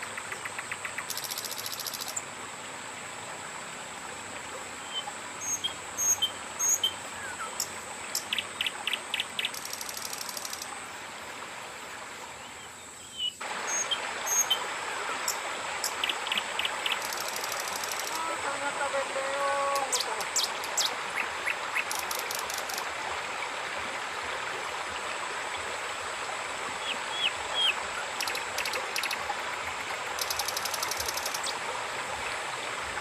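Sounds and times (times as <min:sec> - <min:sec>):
flowing water hiss: 0:00.0 - 0:33.0
bird chirps: 0:04.9 - 0:10.7.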